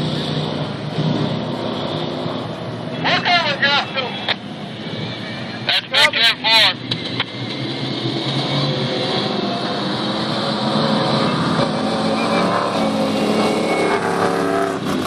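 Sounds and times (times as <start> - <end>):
race vehicle engine under load: 0.0 - 15.0.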